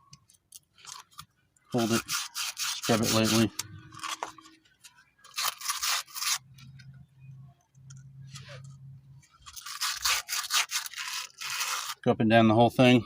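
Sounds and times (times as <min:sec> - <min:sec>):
brush scrubbing wet webbing: 0:01.8 - 0:03.6.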